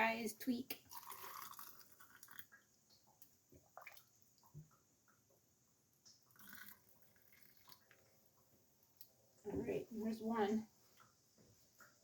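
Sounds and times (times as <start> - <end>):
liquid pouring into glass jar: 0.8 - 2.8, 6.1 - 8.2.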